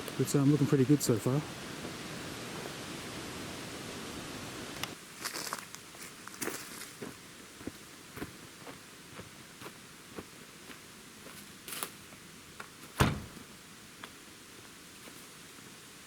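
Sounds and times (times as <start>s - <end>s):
footsteps walking: 5.2s - 11.9s.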